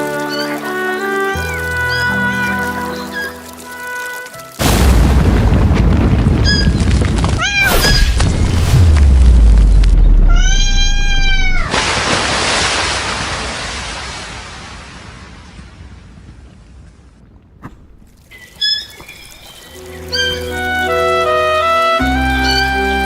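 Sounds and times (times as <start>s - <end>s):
deep falling boom: 4.6s - 11.8s
loud rumbling noise: 4.6s - 12.0s
cat meowing: 10.1s - 11.8s.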